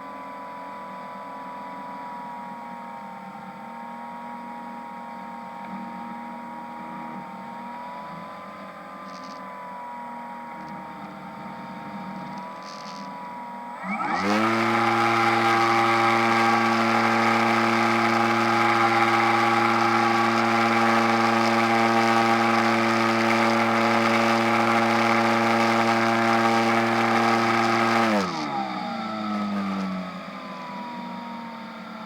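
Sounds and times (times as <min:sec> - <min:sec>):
model airplane motor running: 0:09.0 - 0:09.5, 0:11.6 - 0:32.0.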